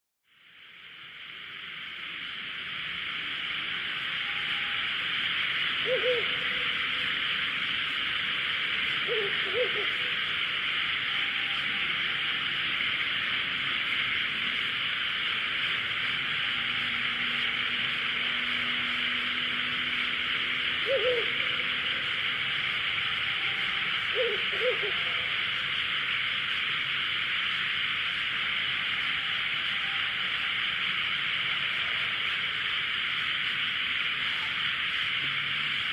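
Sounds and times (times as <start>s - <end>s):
steady high hiss: 0.2s - 35.9s
owls hooting: 4.2s - 12.4s, 18.8s - 26.2s.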